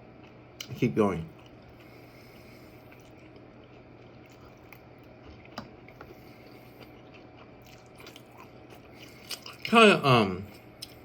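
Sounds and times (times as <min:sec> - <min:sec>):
faint steady hum: 0:00.0 - 0:11.0
chewing and mouth sounds: 0:00.2 - 0:09.8.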